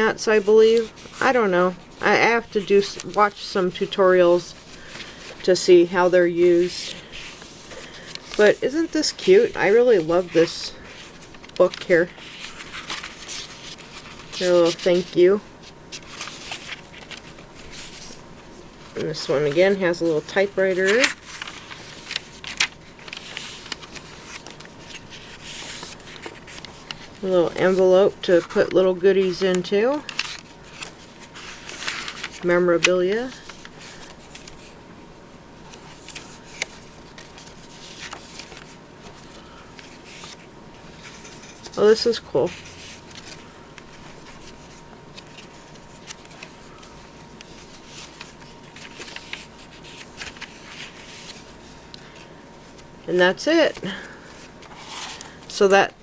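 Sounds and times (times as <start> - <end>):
paper pages rustling: 0.0 - 34.8, 35.6 - 52.9, 53.6 - 56.0.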